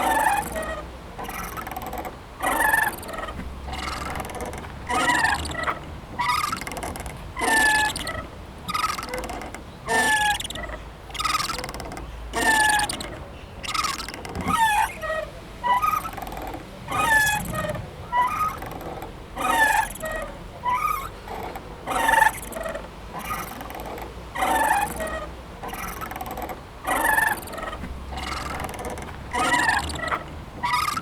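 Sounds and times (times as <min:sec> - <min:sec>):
swing chains squealing: 0:00.0 - 0:31.0.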